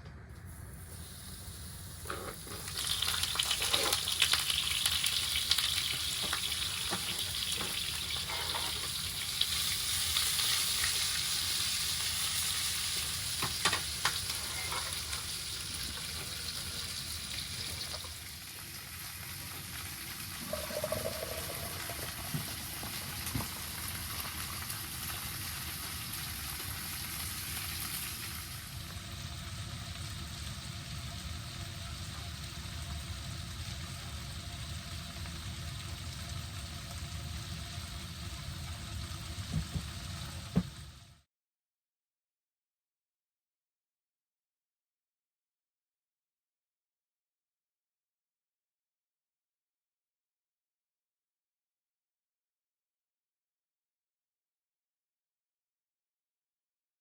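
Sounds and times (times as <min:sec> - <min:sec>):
food sizzling in a frying pan: 0:00.4 - 0:41.2.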